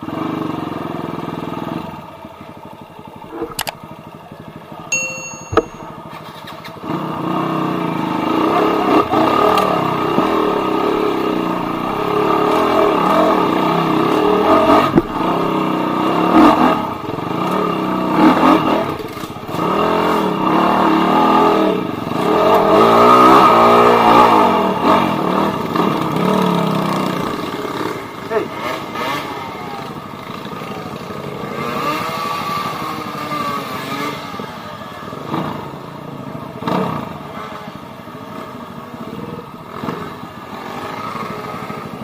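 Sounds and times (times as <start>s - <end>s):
dirt bike engine revving: 6.8s - 35.8s, 39.7s - 42.0s.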